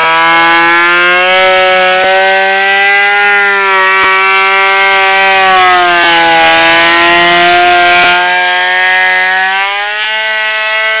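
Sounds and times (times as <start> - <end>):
electric planer whining: 0.0 - 11.0.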